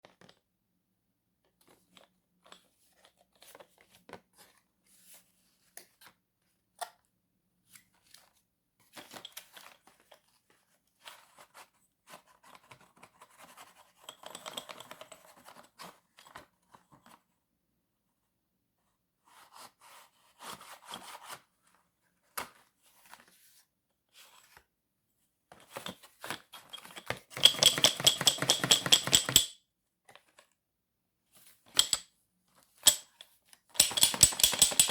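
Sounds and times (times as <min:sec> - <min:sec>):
chalk tapping: 0:27.4 - 0:29.5.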